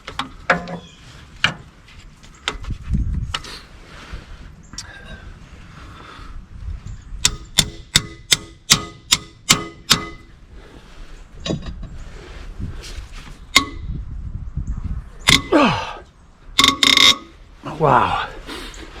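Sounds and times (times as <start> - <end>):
sharp metallic tool clicks: 7.2 - 10.2, 15.3 - 15.5.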